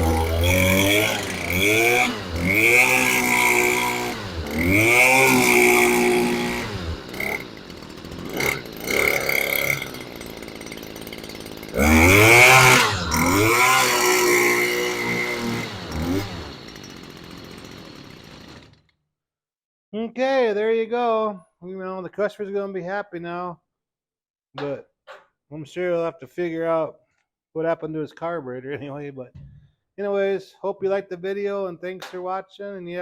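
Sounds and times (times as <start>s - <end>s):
string trimmer engine revving: 0.0s - 18.8s.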